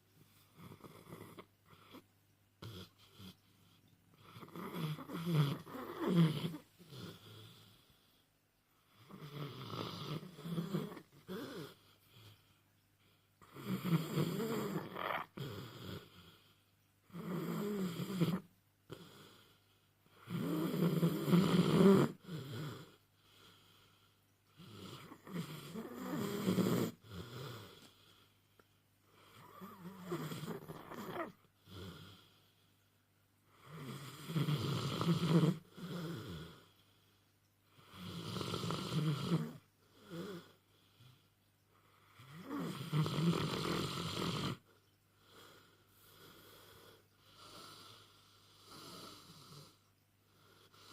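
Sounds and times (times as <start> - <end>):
dog snoring: 0.4 - 8.2, 8.8 - 12.4, 13.0 - 28.2, 29.1 - 32.6, 33.5 - 36.9, 37.7 - 41.2, 41.8 - 50.9.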